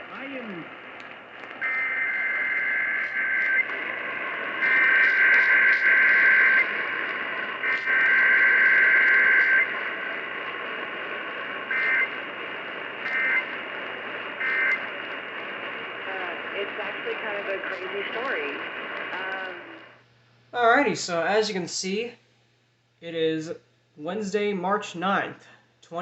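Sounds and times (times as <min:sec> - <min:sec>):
radio hiss: 0:00.0 - 0:20.0
alert data bursts: 0:04.6 - 0:06.7.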